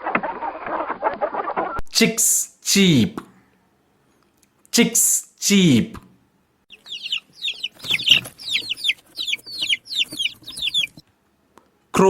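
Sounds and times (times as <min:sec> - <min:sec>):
chicks cheeping: 0:06.7 - 0:11.0.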